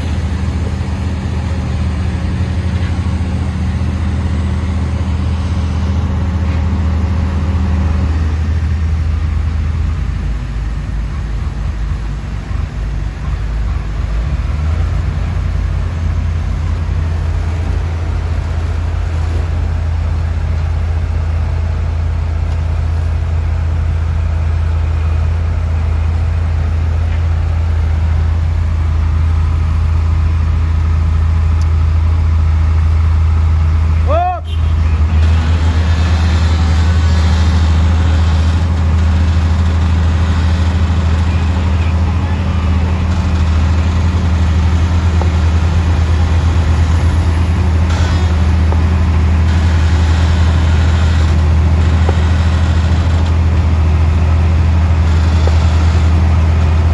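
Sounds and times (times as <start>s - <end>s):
heavy diesel engines running: 0.0s - 56.9s.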